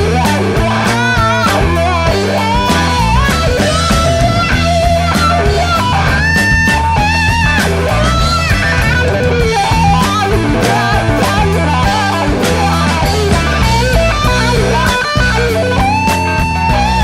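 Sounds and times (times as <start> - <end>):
blues-rock band playing: 0.0 - 17.0
electric guitar lead: 0.0 - 17.0.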